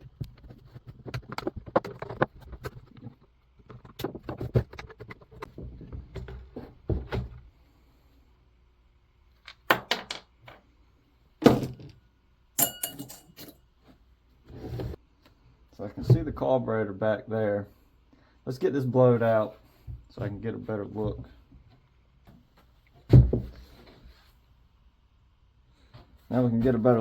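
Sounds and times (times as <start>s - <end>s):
sharp metal knocks and clinks: 12.6s - 13.6s.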